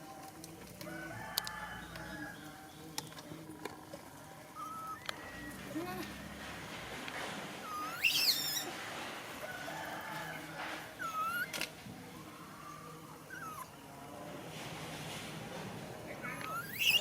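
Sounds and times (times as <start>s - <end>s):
monkey squeaking: 4.6s - 5.1s, 7.7s - 8.7s, 11.0s - 11.6s, 13.3s - 13.7s, 16.3s - 17.0s.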